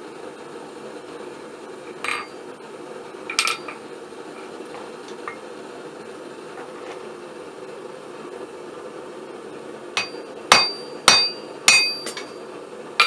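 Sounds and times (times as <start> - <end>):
gas forge roaring: 0.0 - 13.0
steel clanking against steel: 2.0 - 2.3, 3.3 - 3.8, 10.0 - 12.4.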